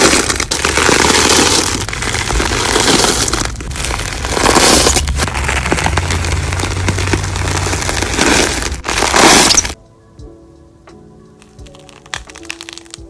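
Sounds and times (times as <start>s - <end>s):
crunchy slime crackling: 0.0s - 9.8s, 11.4s - 13.0s
faint music: 9.8s - 13.0s.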